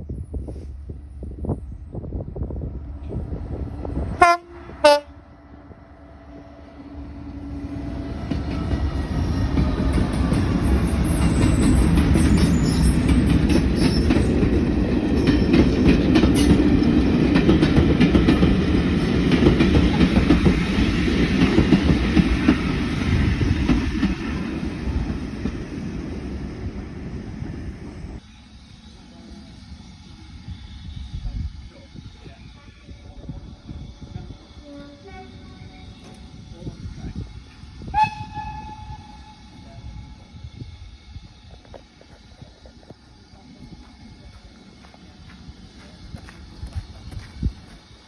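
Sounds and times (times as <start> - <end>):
train rumble: 0.0 - 48.0
train horn toots: 4.1 - 5.2, 34.6 - 36.0, 37.8 - 40.1.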